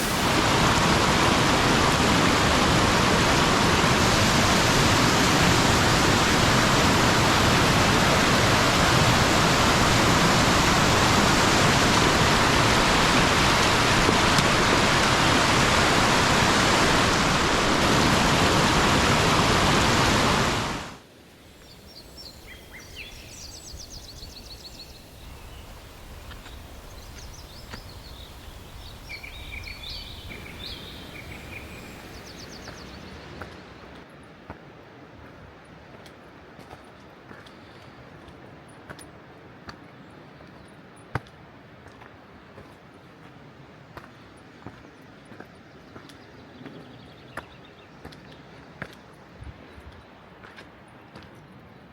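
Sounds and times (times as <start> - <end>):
flowing river water: 0.0 - 39.9
birds chirping and trilling: 21.4 - 33.4.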